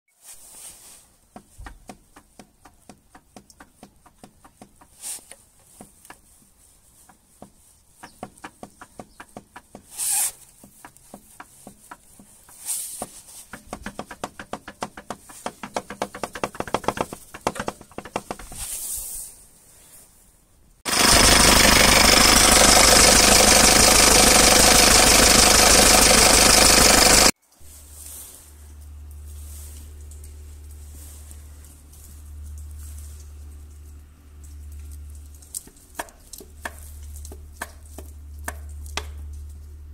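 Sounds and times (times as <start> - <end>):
diesel engine knocking: 8.0 - 9.9, 13.6 - 18.4, 20.9 - 27.3.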